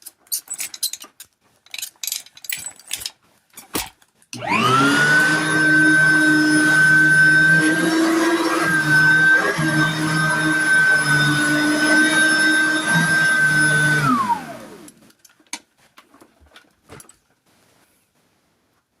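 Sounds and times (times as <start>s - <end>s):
vacuum cleaner motor whining: 4.4s - 15.0s.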